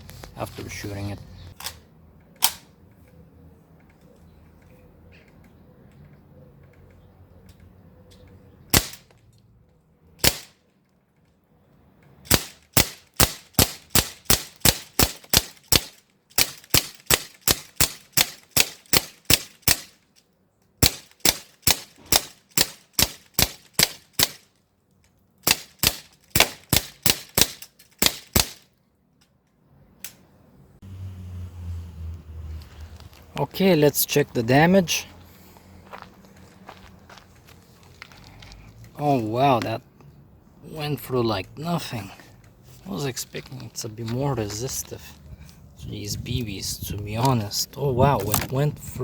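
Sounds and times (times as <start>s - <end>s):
bb gun firing pops: 8.7s - 9.1s.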